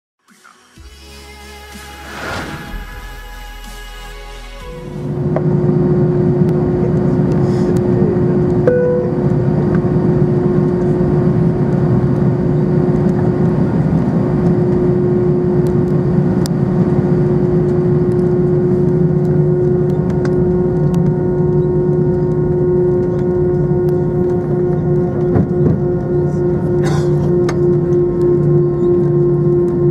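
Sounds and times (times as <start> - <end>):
aircraft cabin engine drone: 0.9 - 29.9
short high tone: 8.7 - 9.3.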